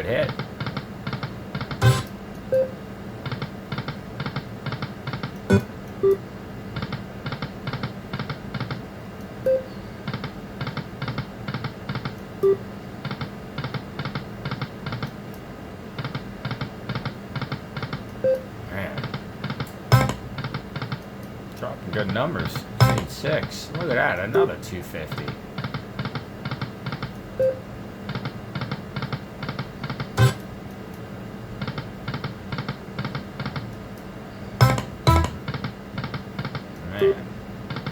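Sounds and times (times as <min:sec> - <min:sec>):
slot machine background music: 0:01.8 - 0:02.1, 0:19.9 - 0:20.3, 0:22.8 - 0:23.2, 0:30.2 - 0:30.4, 0:34.6 - 0:35.5
slot machine spinning ticks: 0:01.8 - 0:02.1, 0:22.8 - 0:23.3, 0:34.6 - 0:35.5
short beep tones: 0:01.8 - 0:02.7.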